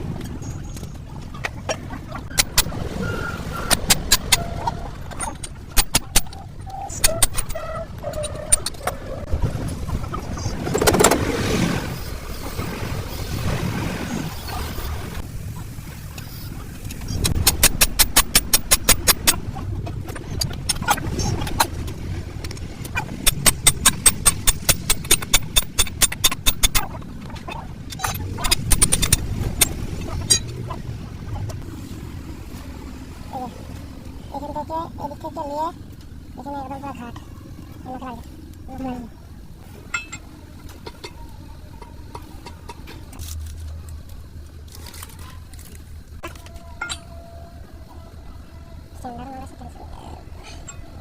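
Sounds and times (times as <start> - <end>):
low mechanical hum: 0.0 - 51.0
rapid hammer blows: 17.2 - 19.4, 23.2 - 26.9.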